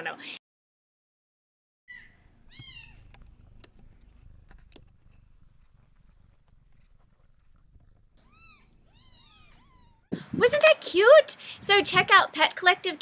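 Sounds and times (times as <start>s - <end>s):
kitten meowing: 1.9s - 3.1s, 8.2s - 10.1s.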